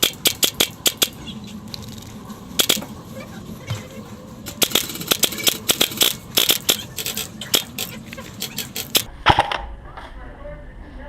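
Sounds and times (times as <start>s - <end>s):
airsoft guns firing: 0.0s - 1.2s, 4.6s - 7.8s.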